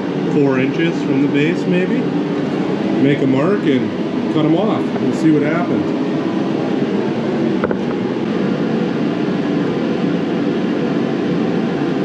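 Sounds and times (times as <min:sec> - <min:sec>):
heater blowing hum: 0:00.0 - 0:12.0
man speaking loudly: 0:03.0 - 0:05.9.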